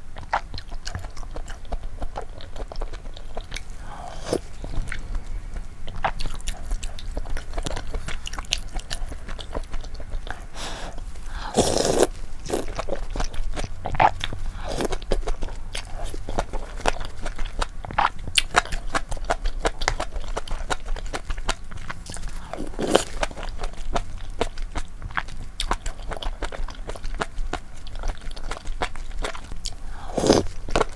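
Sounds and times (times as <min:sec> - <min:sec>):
chewing noodles: 0:00.0 - 0:30.9
loud mouth sound: 0:10.6 - 0:12.7, 0:29.9 - 0:30.6.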